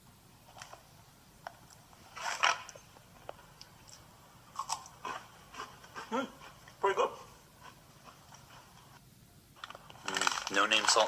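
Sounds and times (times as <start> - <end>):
person chewing crunchy chips: 3.6 - 6.3, 9.9 - 11.0.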